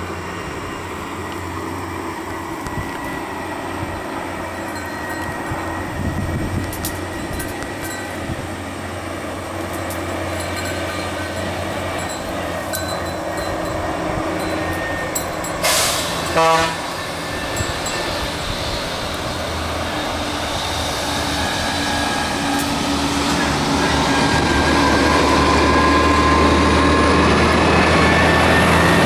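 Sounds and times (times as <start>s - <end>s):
vehicles rumbling by: 0.0s - 29.0s
loud hiss: 15.5s - 23.0s.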